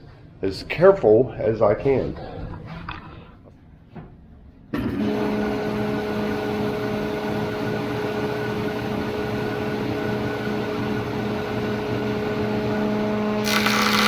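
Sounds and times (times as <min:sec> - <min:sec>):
table saw motor hum and whine: 0:04.8 - 0:14.0.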